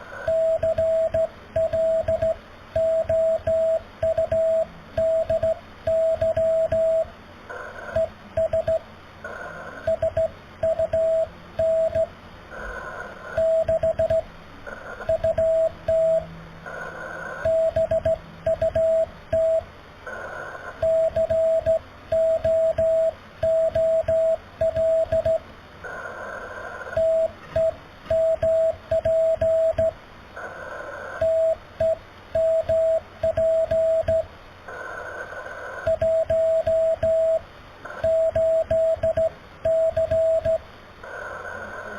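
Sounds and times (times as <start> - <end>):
morse code tone: 0.3 - 7.1, 7.9 - 8.8, 9.8 - 12.1, 13.4 - 14.2, 15.0 - 16.3, 17.4 - 19.6, 20.8 - 25.4, 27.0 - 29.9, 31.2 - 34.2, 35.9 - 37.4, 38.0 - 40.6
radio band hiss: 9.2 - 9.8, 12.5 - 13.6, 16.6 - 17.4, 20.0 - 20.8, 25.8 - 27.6, 30.3 - 31.2, 34.6 - 35.8, 41.0 - 41.9.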